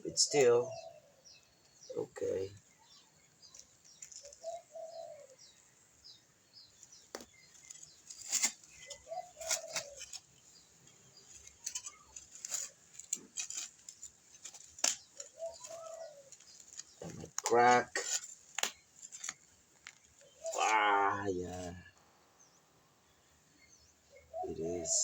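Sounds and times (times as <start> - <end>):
dove cooing: 0.0 - 1.4, 4.0 - 5.6, 7.6 - 10.3, 11.4 - 18.2, 19.2 - 21.9, 24.1 - 25.0
small birds chirping: 0.0 - 25.0
digging in soil: 6.6 - 22.0.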